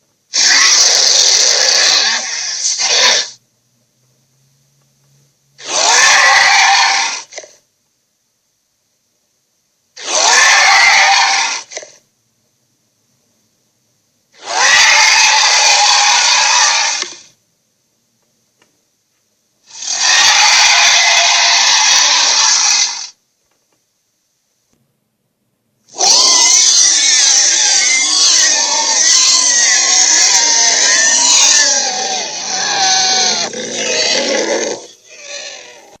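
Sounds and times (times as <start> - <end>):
monster roar: 0.4 - 3.3, 5.6 - 7.5, 10.0 - 11.9, 14.4 - 17.2, 19.7 - 23.1, 26.0 - 36.0.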